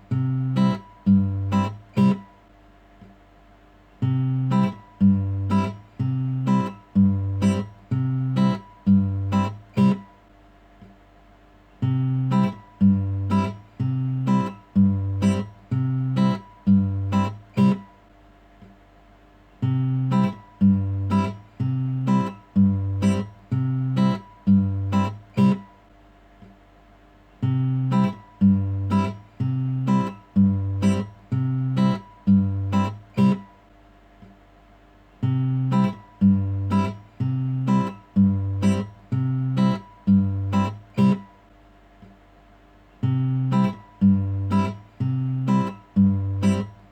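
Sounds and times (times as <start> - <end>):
plucked acoustic guitar: 0.0 - 2.4, 4.0 - 10.2, 11.8 - 18.0, 19.6 - 25.8, 27.4 - 33.6, 35.2 - 41.4, 43.0 - 46.9.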